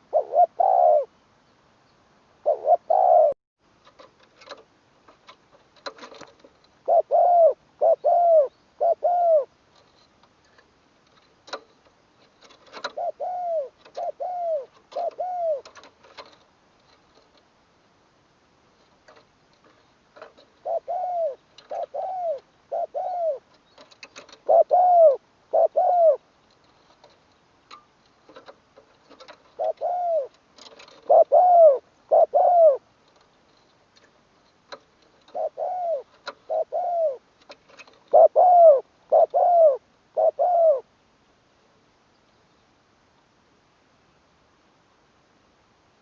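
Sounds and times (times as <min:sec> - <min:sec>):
dove cooing: 0:00.0 - 0:01.1, 0:02.4 - 0:03.4, 0:06.8 - 0:09.5, 0:12.4 - 0:16.4, 0:20.2 - 0:26.3, 0:28.3 - 0:32.9, 0:35.2 - 0:40.9.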